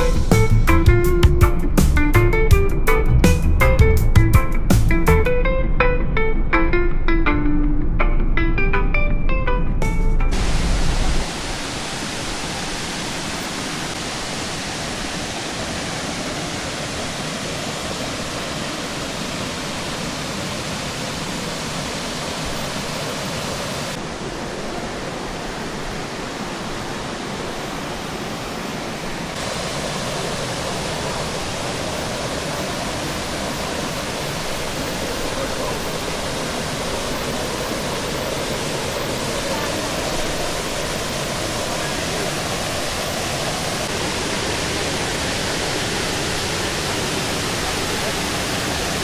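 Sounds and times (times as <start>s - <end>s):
waterfall rushing onto rock: 10.3s - 49.0s.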